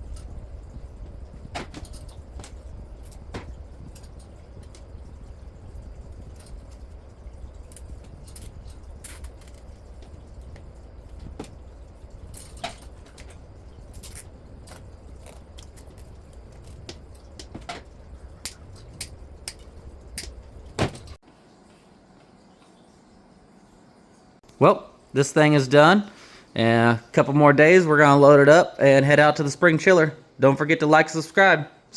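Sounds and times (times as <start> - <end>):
steady low hum: 0.0 - 25.7
metal parts clicking and clinking: 1.0 - 21.2.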